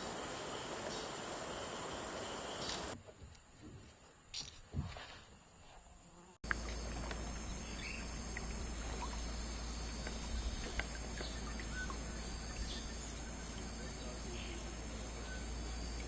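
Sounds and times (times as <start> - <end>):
insect buzzing drone: 0.0 - 3.0, 5.4 - 16.0
bird chirps: 7.4 - 9.3, 10.0 - 16.0.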